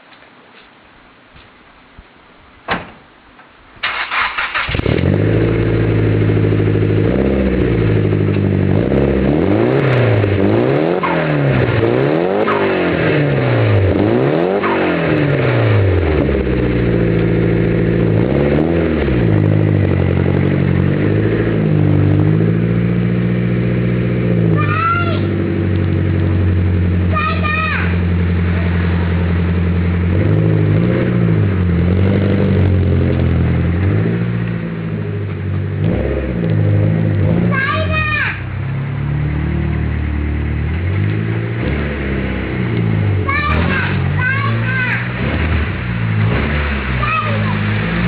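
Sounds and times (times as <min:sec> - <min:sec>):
car engine starting and revving: 0:03.8 - 0:48.0.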